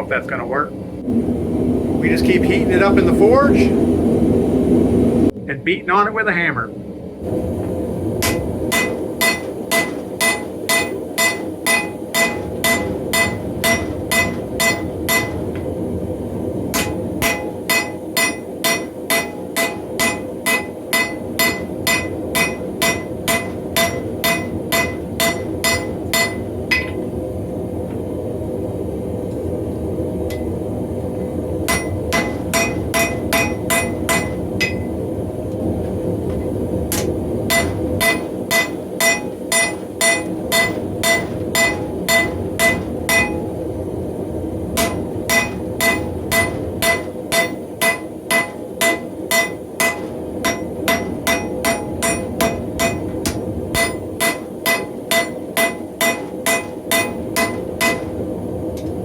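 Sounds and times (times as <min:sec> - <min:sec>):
hammer striking steel on anvil: 0:08.2 - 0:15.6, 0:16.7 - 0:27.1, 0:31.7 - 0:34.9, 0:36.4 - 0:43.5, 0:44.8 - 0:58.2.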